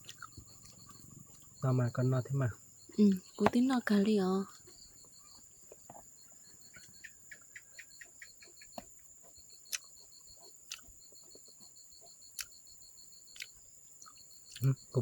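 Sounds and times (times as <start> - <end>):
high-pitched insect trill: 0.0 - 15.0
rapidly pulsing cricket chirp: 0.0 - 15.0.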